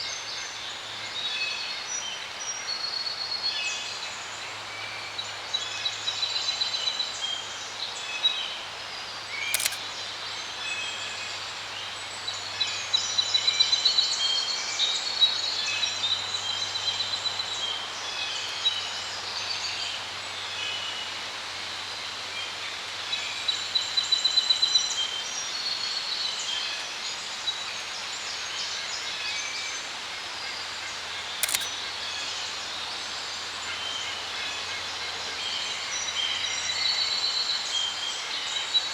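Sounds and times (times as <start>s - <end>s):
sharp clicks: 9.5s - 9.8s, 31.4s - 31.7s.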